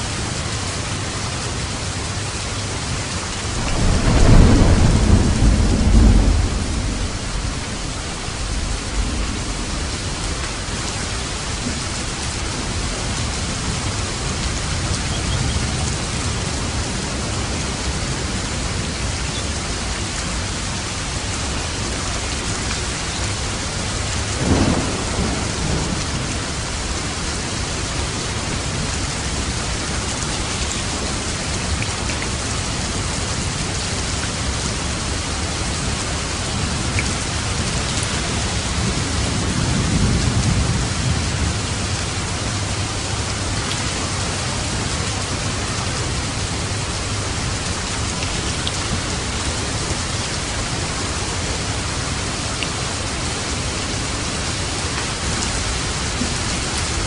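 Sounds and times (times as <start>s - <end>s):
heavy rain falling: 0.0s - 57.0s
thunder: 3.6s - 11.8s, 24.4s - 27.2s, 37.0s - 41.7s.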